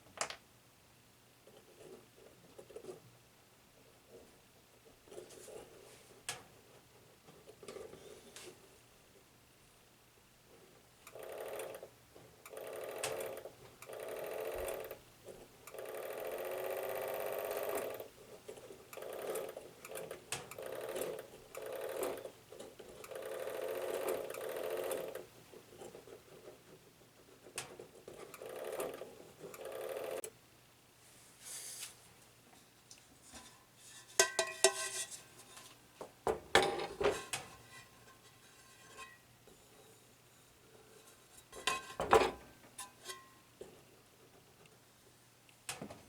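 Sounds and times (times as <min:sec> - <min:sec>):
small motor buzzing and rattling: 0:11.1 - 0:11.9, 0:12.5 - 0:15.0, 0:15.7 - 0:18.1, 0:18.9 - 0:25.3, 0:28.1 - 0:30.3.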